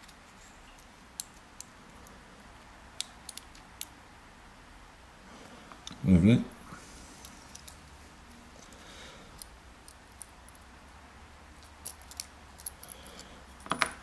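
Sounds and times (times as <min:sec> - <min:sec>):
small metal parts clicking: 0:11.6 - 0:14.0.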